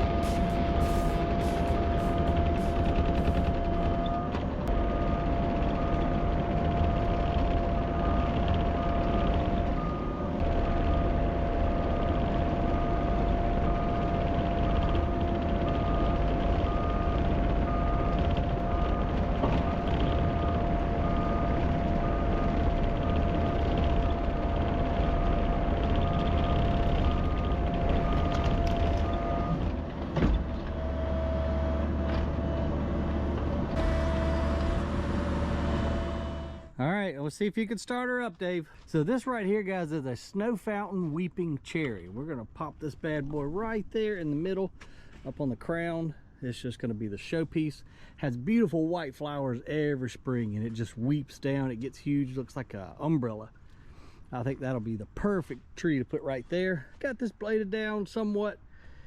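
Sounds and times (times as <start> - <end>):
backup alarm beeping: 0.0 - 29.7
diesel engine running: 0.0 - 36.9.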